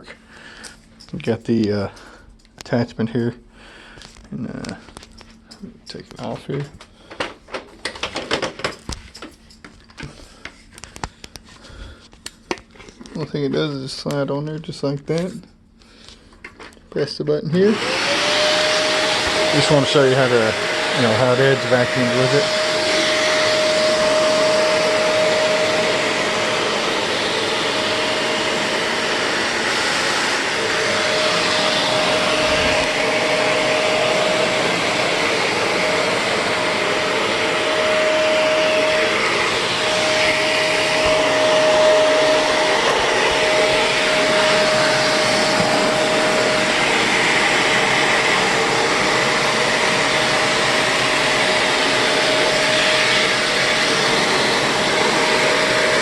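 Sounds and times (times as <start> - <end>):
vacuum cleaner whine and rushing: 6.4 - 8.7, 17.4 - 56.0.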